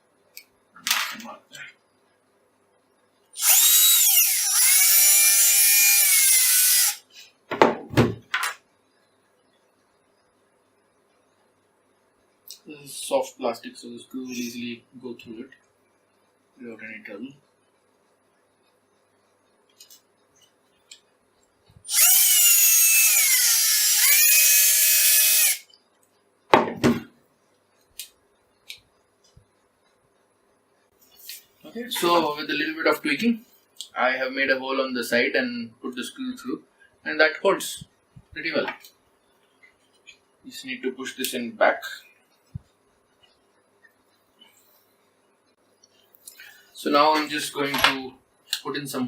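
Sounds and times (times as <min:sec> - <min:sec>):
small electric drill whining: 0:03.4 - 0:07.0, 0:21.9 - 0:25.7.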